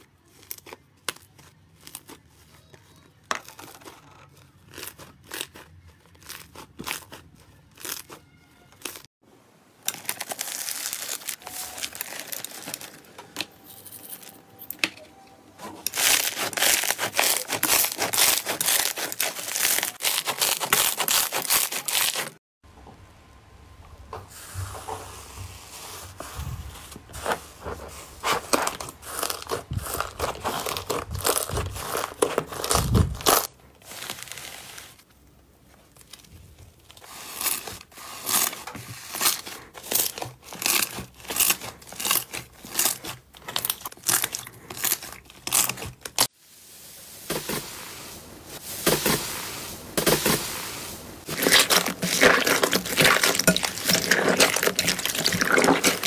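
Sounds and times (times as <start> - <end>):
slime crackling and popping: 3.4 - 9.0, 15.9 - 22.4, 28.4 - 34.9, 35.9 - 46.3, 51.2 - 56.0.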